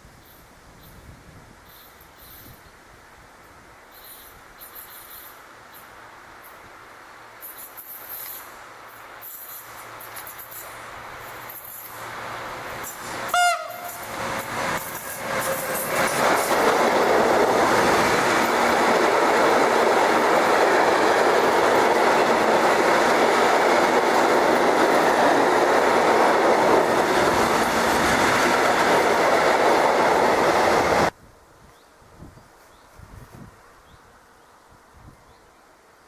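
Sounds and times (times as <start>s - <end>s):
train passing on rails: 3.3s - 31.2s.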